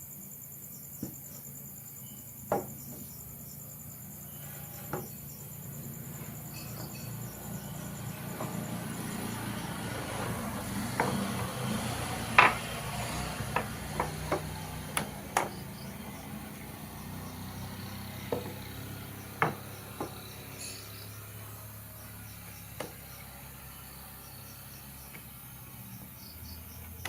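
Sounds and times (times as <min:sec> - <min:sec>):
sharp knocks and taps: 0:02.5 - 0:03.1, 0:10.7 - 0:16.5, 0:17.4 - 0:20.4, 0:22.8 - 0:23.1.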